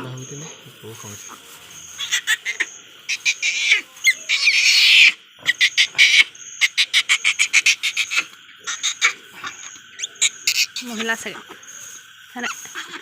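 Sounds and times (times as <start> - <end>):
piglet squealing: 2.0 - 11.2, 12.4 - 13.0.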